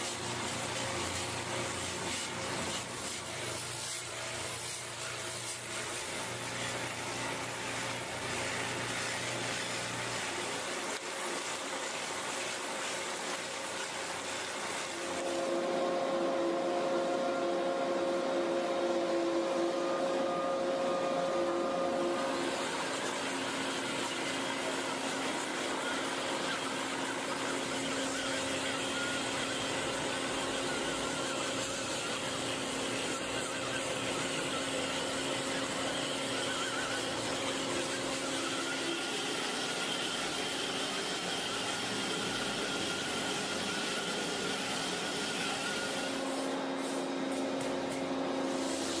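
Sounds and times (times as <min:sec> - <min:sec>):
machine running with whine: 0:14.9 - 0:47.2.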